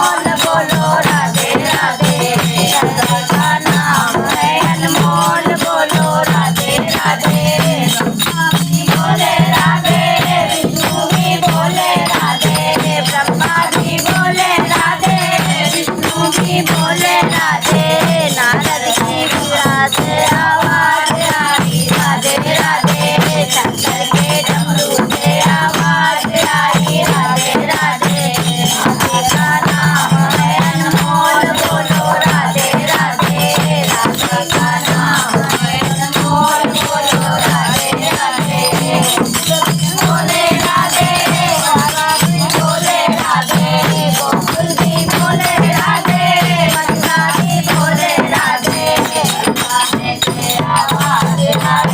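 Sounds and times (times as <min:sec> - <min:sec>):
jingling shaken percussion: 0:00.0 - 0:51.9.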